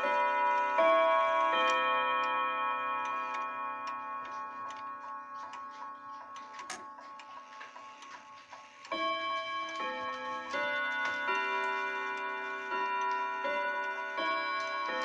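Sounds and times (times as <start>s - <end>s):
clock chime melody: 0.0s - 15.0s
clock ticking: 3.0s - 15.0s.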